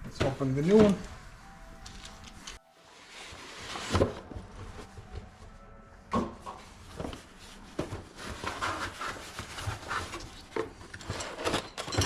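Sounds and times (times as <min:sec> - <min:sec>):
hardware parts knocking and clicking: 0:10.6 - 0:12.0.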